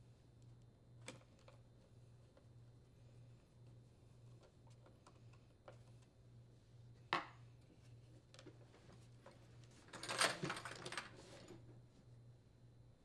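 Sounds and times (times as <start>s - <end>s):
parts clattering and rustling: 8.3s - 11.7s.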